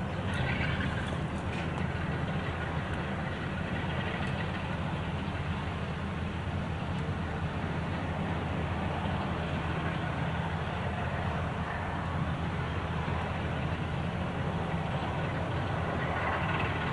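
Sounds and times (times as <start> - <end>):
diesel locomotive engine rumbling: 0.0 - 16.9.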